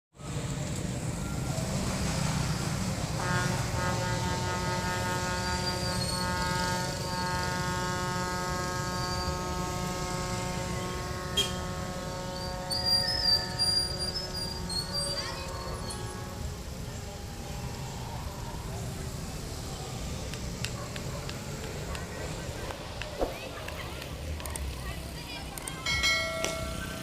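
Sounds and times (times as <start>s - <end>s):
droning tone: 1.2s - 20.3s.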